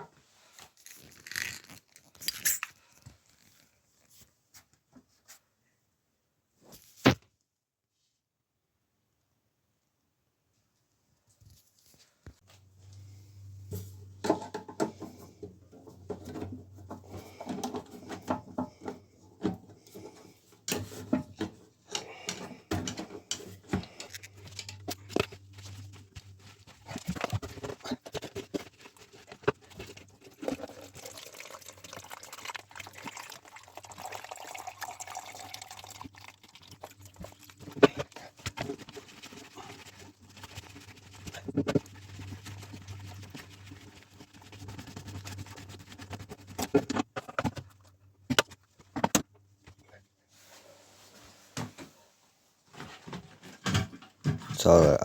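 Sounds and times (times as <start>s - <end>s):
water sloshing and dripping: 13.7s - 46.8s.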